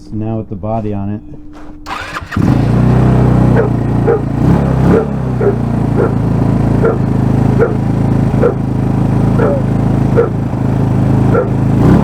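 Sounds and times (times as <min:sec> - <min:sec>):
scooter engine idling: 0:01.8 - 0:12.0
dog barking: 0:03.4 - 0:08.7, 0:09.3 - 0:10.4, 0:11.2 - 0:11.6.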